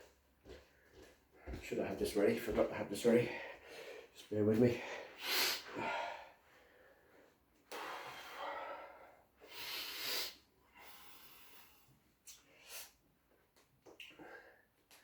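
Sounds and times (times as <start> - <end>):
man breathing close to microphone: 3.2 - 4.2, 4.8 - 13.0.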